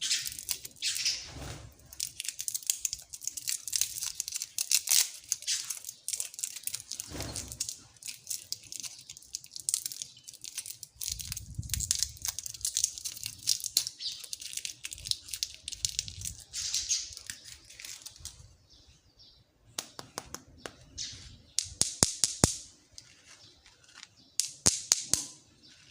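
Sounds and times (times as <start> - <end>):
plastic candy wrapper crinkling: 0.0 - 18.5, 21.7 - 25.9.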